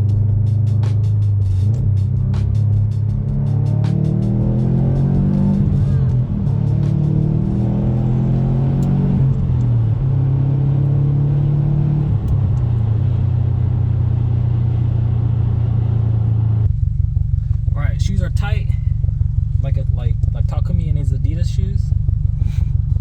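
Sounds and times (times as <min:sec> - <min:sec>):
car engine revving while driving: 0:00.0 - 0:16.7.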